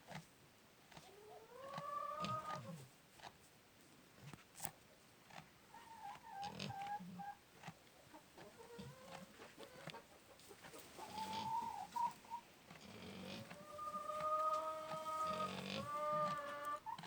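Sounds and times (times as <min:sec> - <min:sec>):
chickens trilling: 0:01.0 - 0:02.8, 0:08.0 - 0:17.0.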